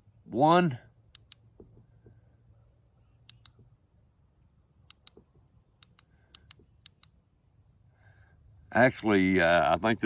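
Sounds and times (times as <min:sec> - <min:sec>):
flashlight switch clicking: 0:01.1 - 0:01.4, 0:03.2 - 0:03.6, 0:04.8 - 0:05.2, 0:05.8 - 0:07.2.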